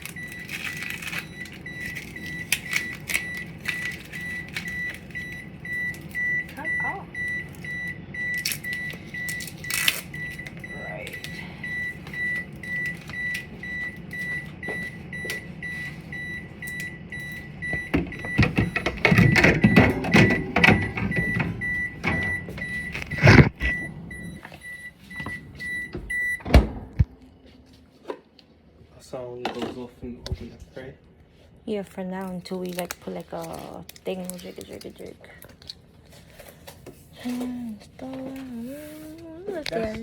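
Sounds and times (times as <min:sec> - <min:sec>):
refrigerator alarm beeping: 0:00.0 - 0:27.4
knocks and rattling: 0:17.6 - 0:23.6.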